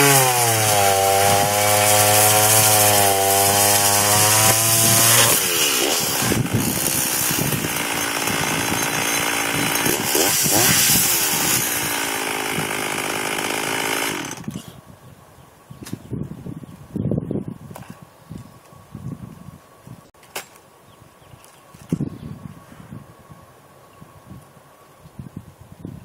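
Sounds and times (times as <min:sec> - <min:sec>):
chainsaw cutting wood: 0:00.0 - 0:14.6.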